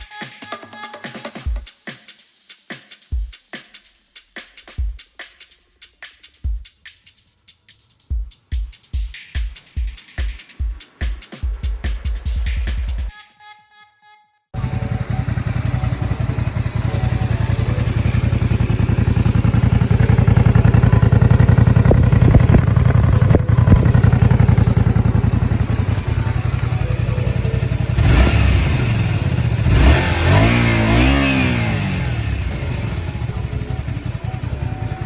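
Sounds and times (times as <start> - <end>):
motorcycle engine running: 14.6 - 35.0.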